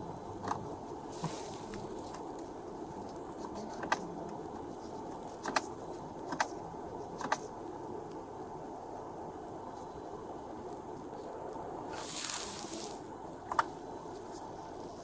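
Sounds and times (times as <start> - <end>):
sharp clicks: 7.2 - 7.5.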